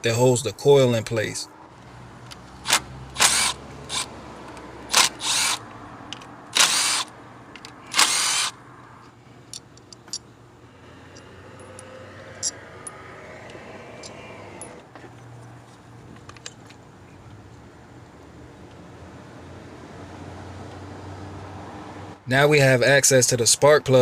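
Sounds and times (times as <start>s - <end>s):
cordless driver spinning bolt: 2.3s - 8.6s.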